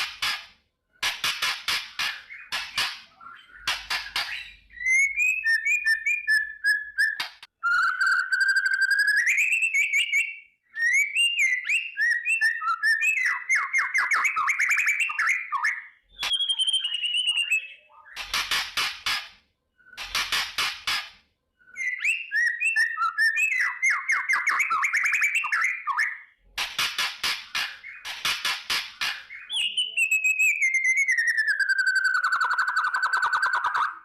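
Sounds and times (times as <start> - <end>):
harsh crackling bird calls: 0.0 - 0.6
songbird whistling: 2.3 - 18.2, 21.6 - 26.3, 29.3 - 34.0.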